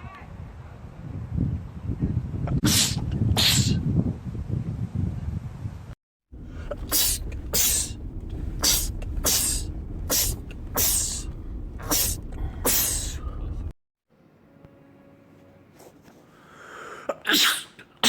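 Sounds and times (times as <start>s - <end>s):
steady low rumble: 6.3s - 13.7s
man sneezing: 6.8s - 7.9s, 8.6s - 11.2s, 11.8s - 13.3s, 17.1s - 17.9s.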